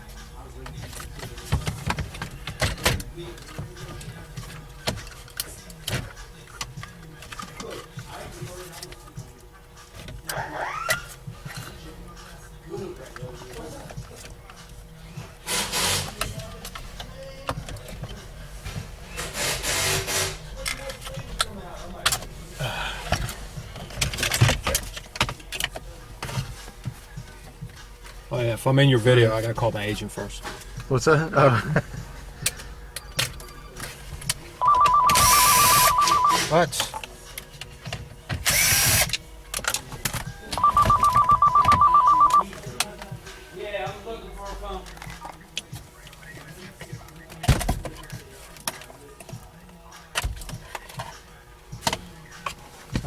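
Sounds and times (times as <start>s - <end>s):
telephone ringing with electronic trill: 34.6s - 36.5s, 40.6s - 42.4s.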